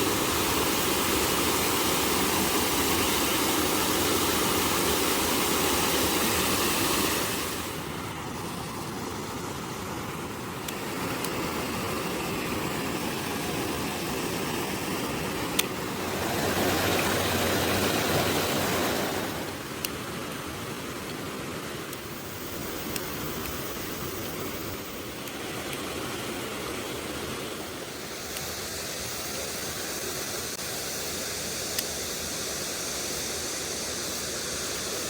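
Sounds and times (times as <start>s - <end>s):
mountain stream rushing: 0.0s - 35.0s
sharp click: 15.5s - 15.8s.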